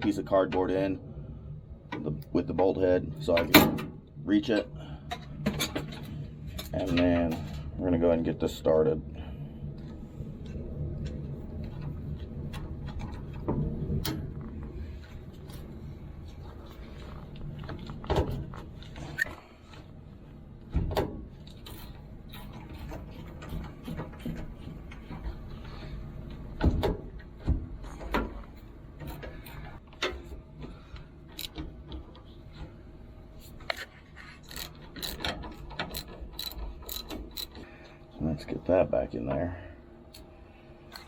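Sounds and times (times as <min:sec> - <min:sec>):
socket ratchet clicking: 0:34.5 - 0:37.6.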